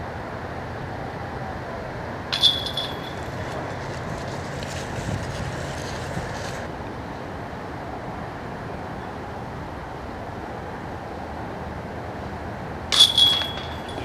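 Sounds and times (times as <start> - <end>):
outdoor noise rushing: 2.2 - 6.8, 12.8 - 14.0
chains ringing: 2.3 - 6.7, 12.9 - 14.0
disc striking metal basket: 2.3 - 6.7, 12.9 - 14.0.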